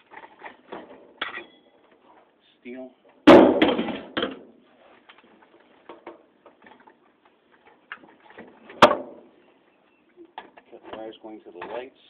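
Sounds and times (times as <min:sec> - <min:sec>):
sharp knock: 0:03.3 - 0:04.3.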